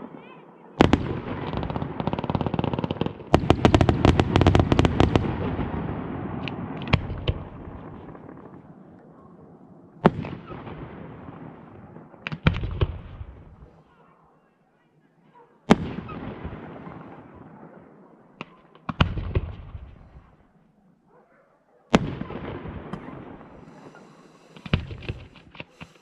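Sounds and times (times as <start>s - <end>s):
fireworks crackling bangs: 0.0s - 9.1s, 10.0s - 13.8s, 15.7s - 17.6s, 18.4s - 20.4s, 21.9s - 26.0s
loud firework bangs: 0.1s - 9.0s, 10.0s - 13.7s, 15.7s - 20.4s, 21.9s - 26.0s
rumbling echo: 3.1s - 13.8s.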